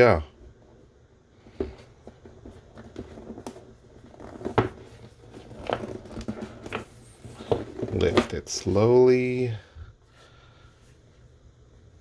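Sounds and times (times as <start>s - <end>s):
cardboard rustling and scraping: 1.4s - 8.9s.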